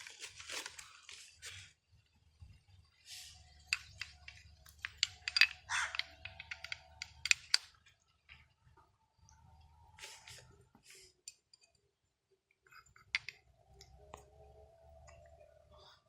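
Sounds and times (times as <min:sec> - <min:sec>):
small metal parts clinking: 0:03.6 - 0:08.0.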